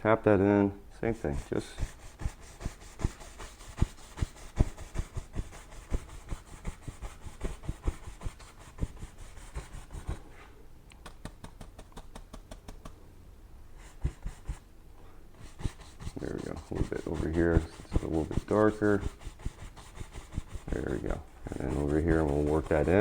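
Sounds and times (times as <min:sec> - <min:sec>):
paintbrush tapping on canvas: 0:11.0 - 0:13.0.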